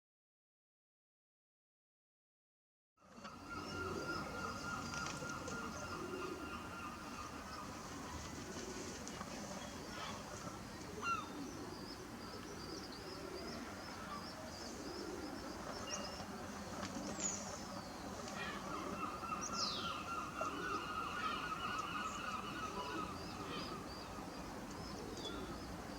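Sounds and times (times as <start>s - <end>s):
birds chirping: 9.6s - 25.9s.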